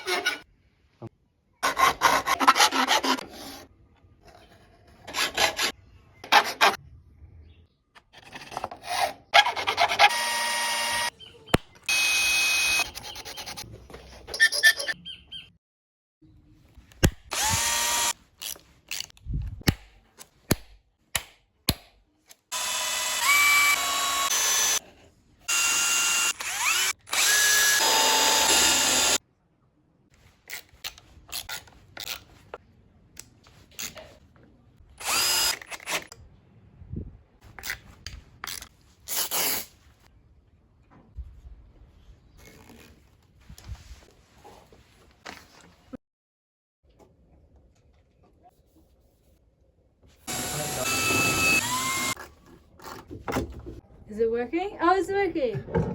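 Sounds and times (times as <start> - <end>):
power drill whining: 10.0 - 11.1, 11.9 - 13.0, 17.3 - 18.2, 22.5 - 24.8, 25.5 - 29.2, 35.0 - 36.1, 50.3 - 52.2.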